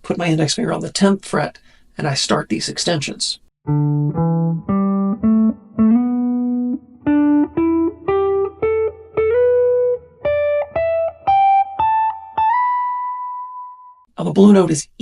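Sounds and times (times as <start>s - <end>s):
guitar picking single notes: 3.6s - 14.0s.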